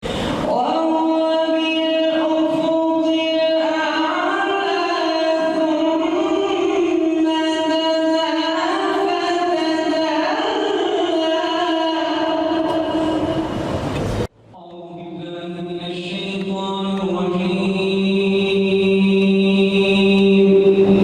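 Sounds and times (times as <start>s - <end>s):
man chanting melodically: 14.5s - 21.0s.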